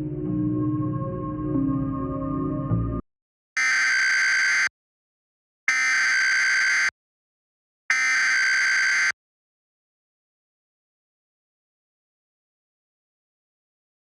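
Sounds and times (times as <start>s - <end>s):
ambient music: 0.0s - 3.0s.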